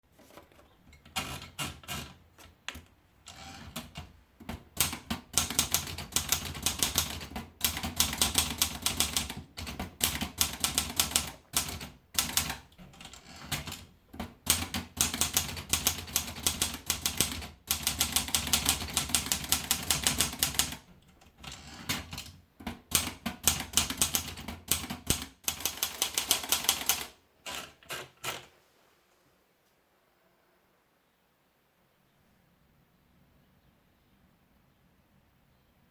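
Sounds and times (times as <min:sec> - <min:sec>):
manual typewriter keystrokes: 0:01.0 - 0:28.5.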